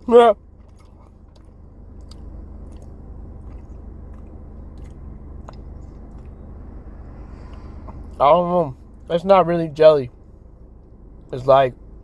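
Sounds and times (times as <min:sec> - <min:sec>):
low steady hum: 0:00.0 - 0:12.0
person chewing: 0:00.6 - 0:06.4.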